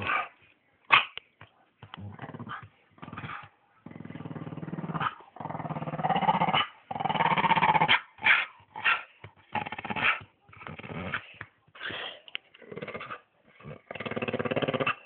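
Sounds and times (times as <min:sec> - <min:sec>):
dog growling: 0:01.9 - 0:08.0, 0:08.7 - 0:11.3, 0:12.6 - 0:15.0.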